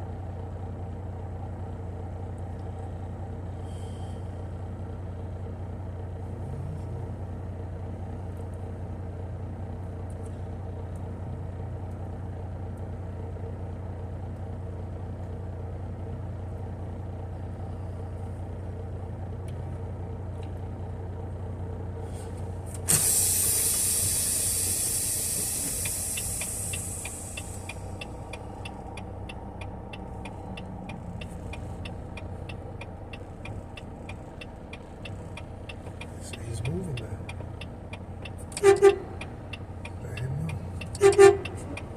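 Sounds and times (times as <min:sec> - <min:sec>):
truck diesel engine idling: 0:00.0 - 0:41.9
air brake hiss: 0:03.6 - 0:04.2, 0:22.0 - 0:28.0
light ticking: 0:24.7 - 0:41.9.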